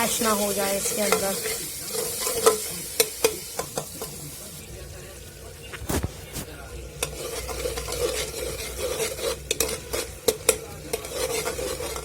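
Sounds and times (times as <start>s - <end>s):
sauce sizzling in hot oil: 0.0s - 12.0s
spoon scraping and tapping pot: 0.8s - 4.2s, 5.7s - 12.0s.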